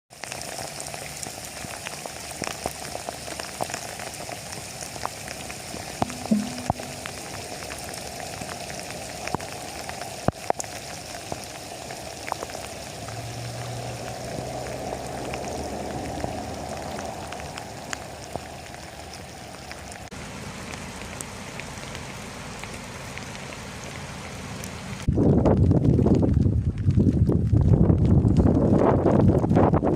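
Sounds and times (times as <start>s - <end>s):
steady rain falling: 0.1s - 29.9s
drops ticking on a surface: 6.0s - 7.2s.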